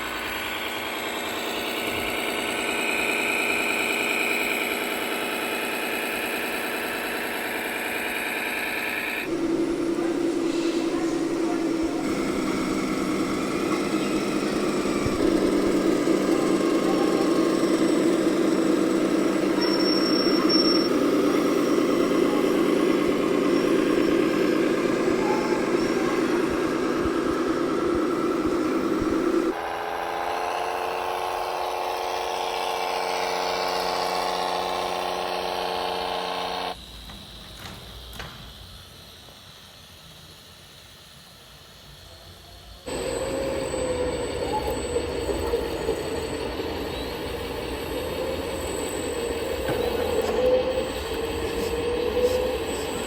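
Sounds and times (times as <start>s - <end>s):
model diesel engine sound: 0.0s - 38.4s, 42.8s - 53.0s.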